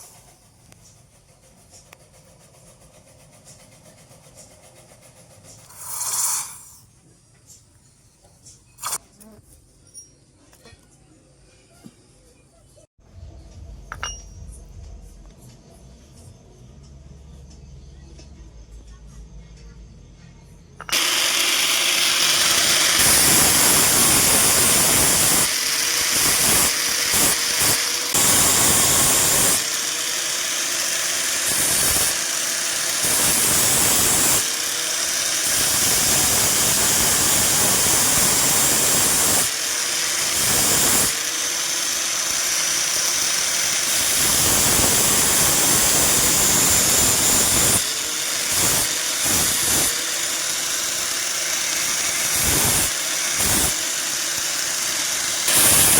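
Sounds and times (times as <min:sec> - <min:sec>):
electric grinder grinding metal: 0:20.8 - 0:55.9.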